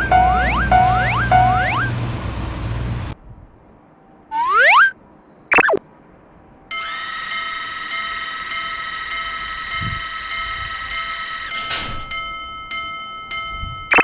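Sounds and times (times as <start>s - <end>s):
high multi-pitched cartoon train tone: 0.0s - 2.2s, 4.3s - 5.8s, 6.7s - 11.7s.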